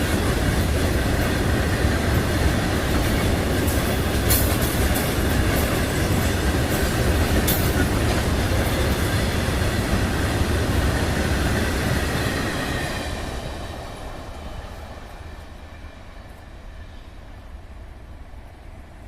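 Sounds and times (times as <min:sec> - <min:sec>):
wheels clicking over rail joints: 0:00.0 - 0:11.0
freight train rumbling past: 0:00.0 - 0:19.0.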